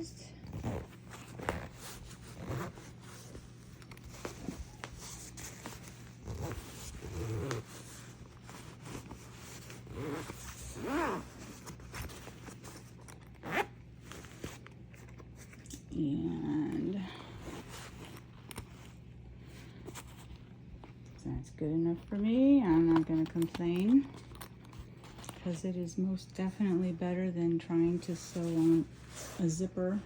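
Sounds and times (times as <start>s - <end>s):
zipper being zipped closed: 0.4s - 14.6s.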